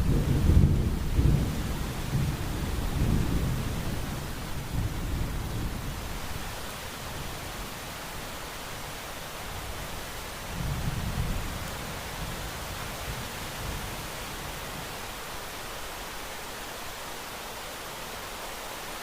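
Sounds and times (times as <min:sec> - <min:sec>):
thunder rumbling: 0:00.0 - 0:06.0
steady rain hiss: 0:00.0 - 0:19.0.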